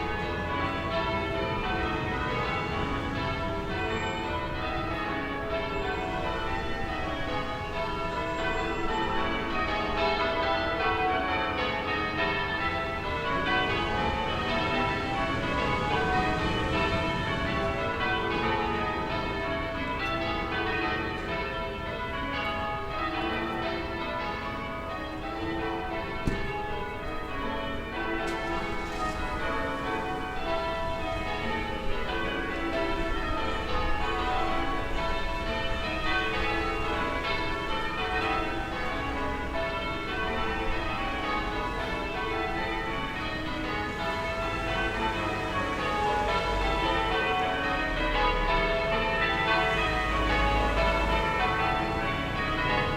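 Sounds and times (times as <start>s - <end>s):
distant church bells ringing: 0.0s - 52.9s
low town rumble: 11.5s - 24.7s.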